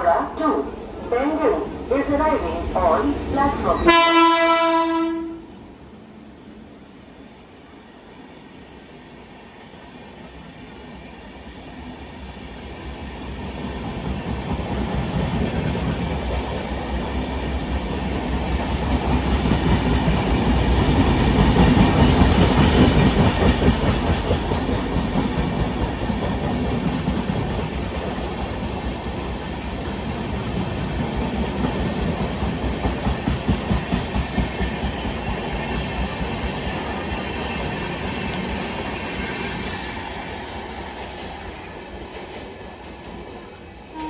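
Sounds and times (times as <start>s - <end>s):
train wheels clattering on rails: 12.0s - 44.0s.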